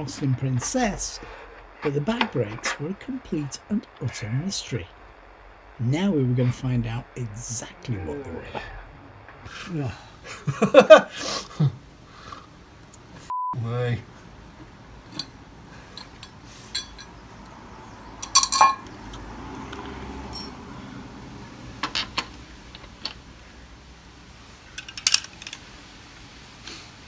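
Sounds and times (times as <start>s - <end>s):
faint low hum: 0.0s - 27.0s
metal tools clinking: 14.0s - 20.9s, 21.8s - 23.3s, 24.8s - 25.6s.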